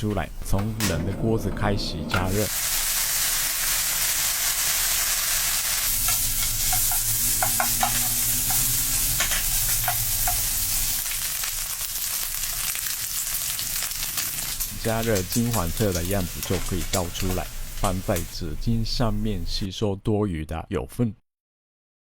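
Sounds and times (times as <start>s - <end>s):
bacon sizzling in a pan: 2.4s - 18.6s.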